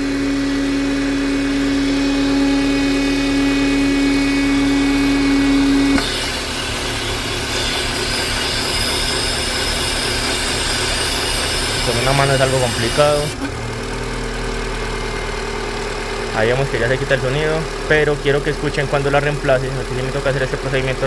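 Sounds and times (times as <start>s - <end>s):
loud steady tone: 0.0s - 13.4s
car engine idling: 0.0s - 21.0s.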